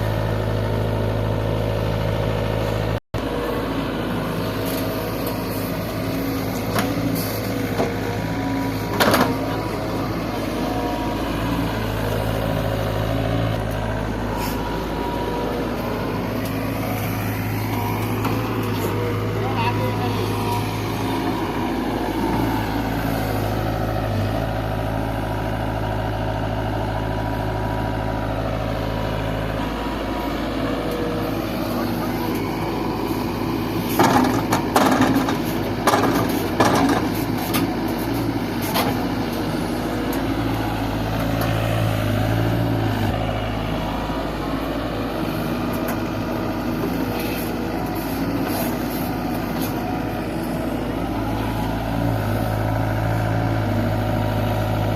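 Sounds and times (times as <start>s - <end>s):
diesel engine running: 0.0s - 54.9s
loud knocks and clattering: 33.9s - 37.7s.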